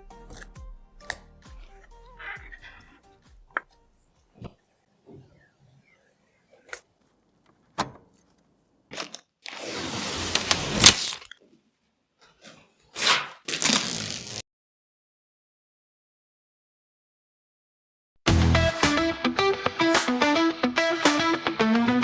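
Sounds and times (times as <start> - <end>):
rustling or scraping: 9.6 - 11.6.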